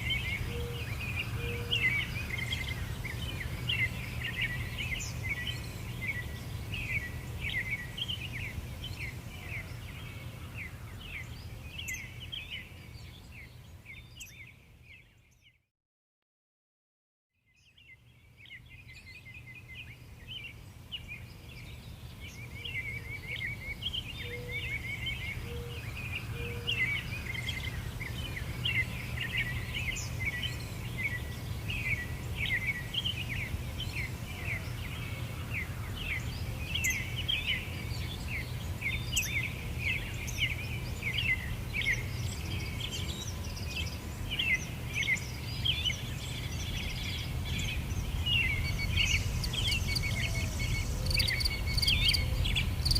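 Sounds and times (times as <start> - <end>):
small birds chirping: 0.0 - 15.6, 17.5 - 52.9
steady low rumble: 46.9 - 52.9.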